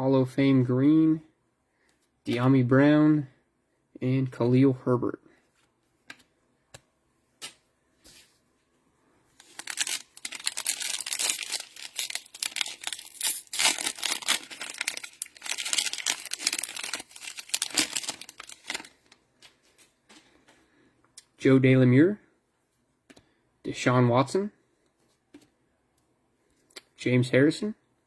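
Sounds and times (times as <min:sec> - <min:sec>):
cellophane wrapper tearing and crinkling: 0:09.4 - 0:19.2.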